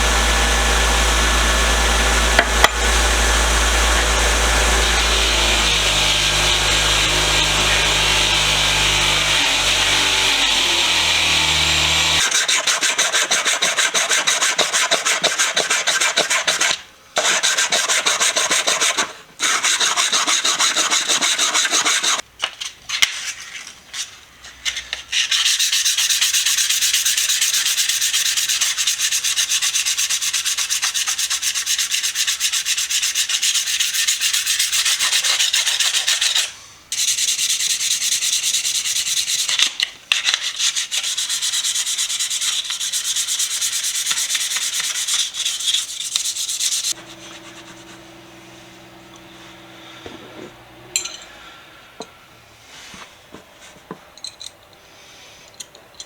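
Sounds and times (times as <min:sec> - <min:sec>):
high-pitched abrasive scraping: 0:00.0 - 0:12.3, 0:46.7 - 0:52.1
low steady hum: 0:47.0 - 0:52.2.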